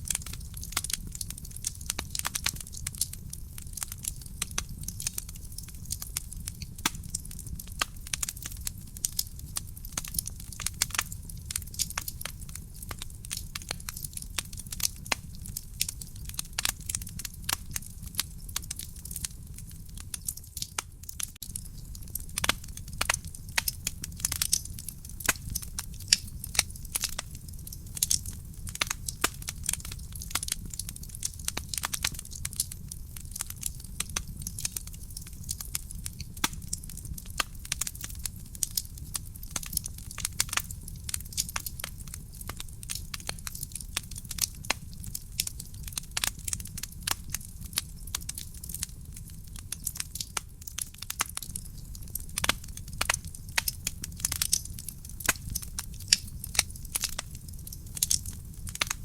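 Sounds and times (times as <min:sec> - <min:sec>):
fire crackling and snapping: 0:00.0 - 0:59.0
low rumble of flames: 0:00.0 - 0:59.0.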